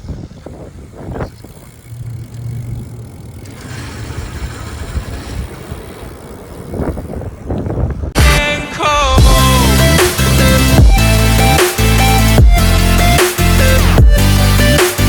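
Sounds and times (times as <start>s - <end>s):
e-bike hub motor hum: 0.0s - 8.2s.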